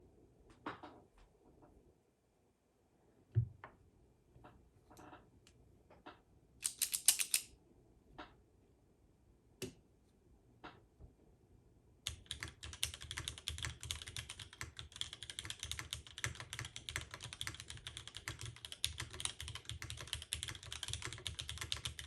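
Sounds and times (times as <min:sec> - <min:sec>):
mechanical keyboard keystrokes: 0:06.6 - 0:07.5, 0:12.1 - 0:22.0.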